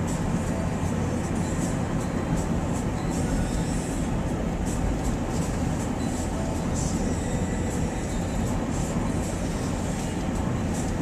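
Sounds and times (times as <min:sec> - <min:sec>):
vehicle rumble and hiss: 0:00.0 - 0:11.0.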